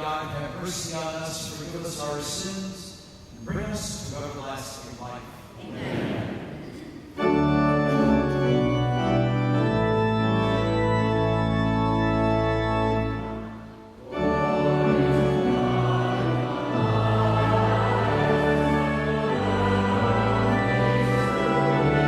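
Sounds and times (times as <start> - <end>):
church organ chords: 7.2 - 22.0.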